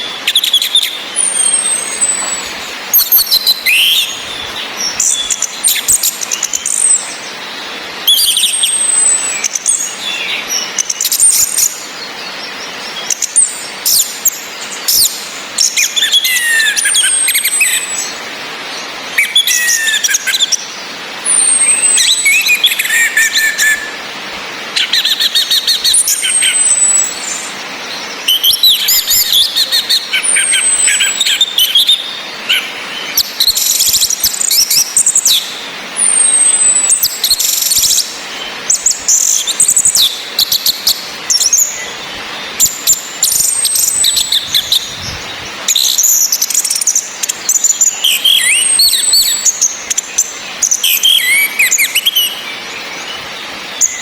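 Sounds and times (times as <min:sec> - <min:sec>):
chirpy bird song: 0:00.0 - 0:54.0
rain hiss: 0:00.0 - 0:54.0
thrush falling whistle call: 0:21.3 - 0:24.0.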